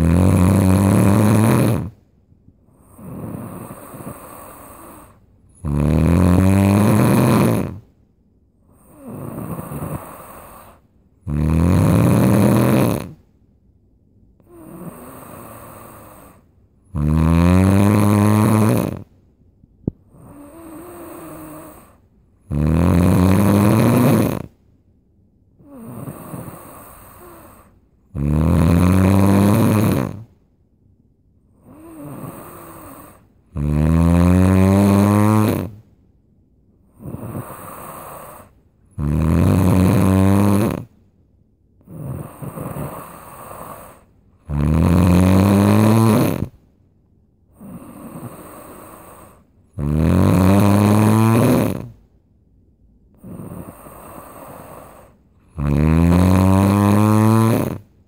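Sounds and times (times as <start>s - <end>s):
deep rattling snores: 0.0s - 2.0s, 2.7s - 7.9s, 8.7s - 13.2s, 14.4s - 19.1s, 19.9s - 24.6s, 25.6s - 30.4s, 31.6s - 35.9s, 36.9s - 41.0s, 41.8s - 46.6s, 47.5s - 52.1s, 53.1s - 58.0s
quiet breathing: 1.0s - 5.8s, 7.0s - 11.3s, 14.3s - 17.0s, 18.4s - 22.6s, 23.4s - 28.2s, 31.3s - 33.6s, 35.0s - 44.8s, 45.7s - 50.0s, 53.0s - 58.0s.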